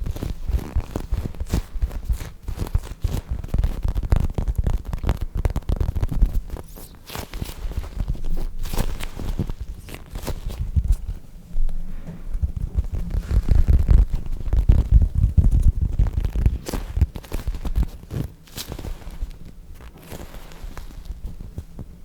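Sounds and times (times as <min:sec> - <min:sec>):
foam toy crackling and rubbing: 0:00.0 - 0:11.2, 0:12.3 - 0:22.0
low thumps: 0:10.6 - 0:16.4.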